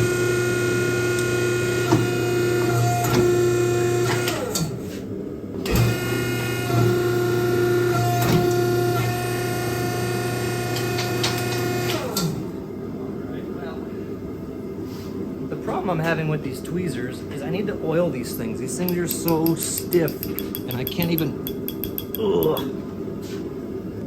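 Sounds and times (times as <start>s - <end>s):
forging press motor humming: 0.0s - 4.8s, 5.5s - 12.7s.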